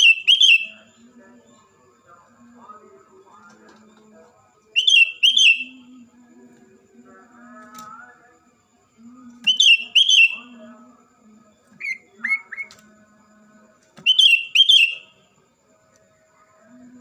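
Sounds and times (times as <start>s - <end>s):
fainter lower bird calls: 0.0s - 0.9s, 4.8s - 5.9s, 9.5s - 10.6s, 14.0s - 15.2s.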